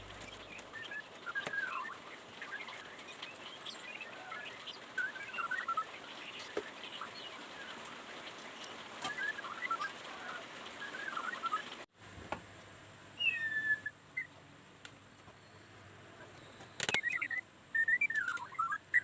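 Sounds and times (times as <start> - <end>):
birds chirping: 0.0 - 11.8, 13.2 - 19.0.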